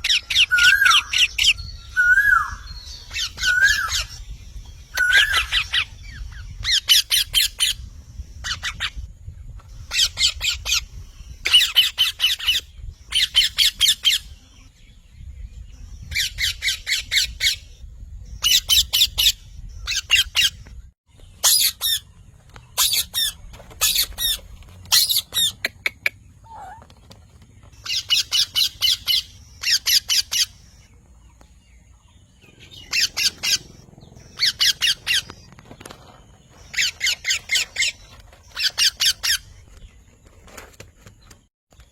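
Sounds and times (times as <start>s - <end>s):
parrot squawking: 32.6s - 35.3s.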